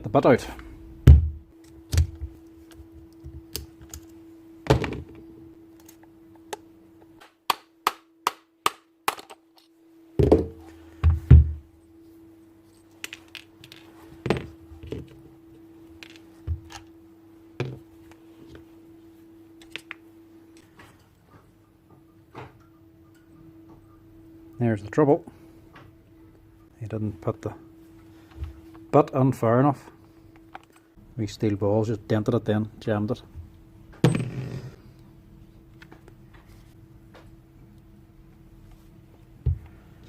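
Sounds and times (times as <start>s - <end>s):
steady low hum: 0.0s - 40.0s
knocks and heavy thunks: 1.0s - 1.4s, 10.2s - 11.6s.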